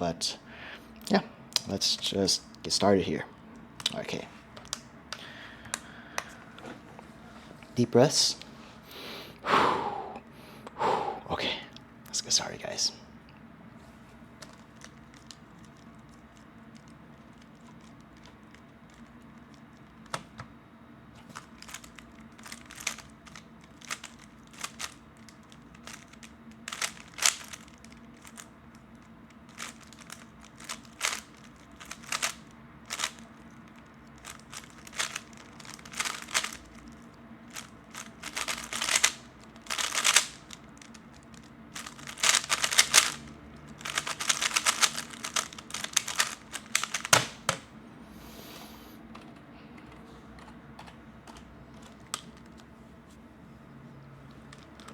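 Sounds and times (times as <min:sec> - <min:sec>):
puzzle cube layers clicking: 0:26.7 - 0:28.5, 0:29.5 - 0:31.2, 0:31.8 - 0:33.2, 0:34.2 - 0:36.8, 0:37.6 - 0:41.0, 0:41.8 - 0:47.6.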